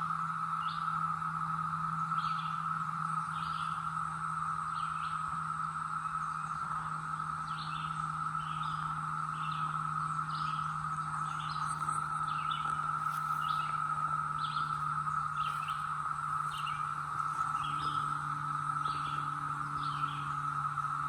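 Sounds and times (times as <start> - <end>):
cicadas droning: 0.0 - 21.0
faint low hum: 0.0 - 21.0
bird chirping: 7.4 - 21.0.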